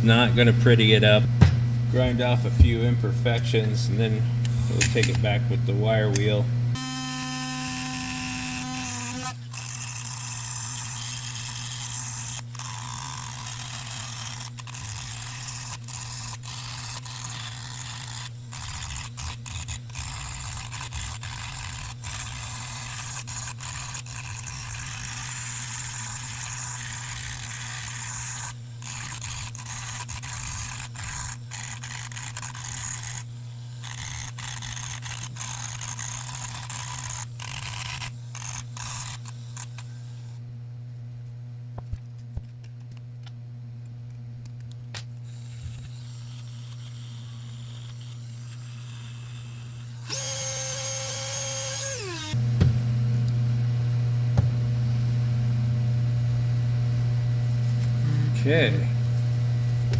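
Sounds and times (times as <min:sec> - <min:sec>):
motor whine: 0:00.0 - 0:40.4, 0:45.2 - 0:59.9
rotary tool grinding metal: 0:03.3 - 0:40.4, 0:45.2 - 0:52.4.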